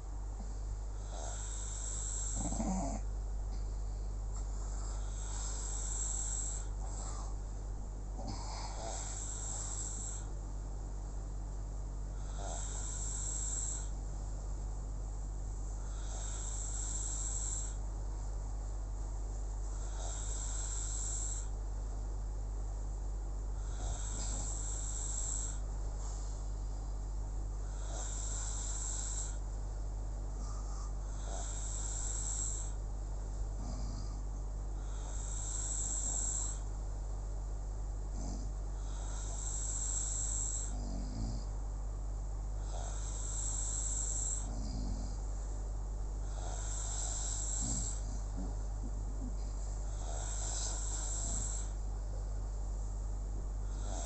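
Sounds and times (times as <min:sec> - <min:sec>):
steady low hum: 0:00.0 - 0:54.0
hissy snoring: 0:01.0 - 0:03.1, 0:04.4 - 0:07.4, 0:08.2 - 0:10.3, 0:12.1 - 0:14.0, 0:15.8 - 0:17.8, 0:19.7 - 0:21.6, 0:23.5 - 0:26.3, 0:27.6 - 0:29.4, 0:30.3 - 0:32.8, 0:33.6 - 0:36.7, 0:38.1 - 0:41.6, 0:42.6 - 0:45.3, 0:46.2 - 0:51.8, 0:53.6 - 0:54.0.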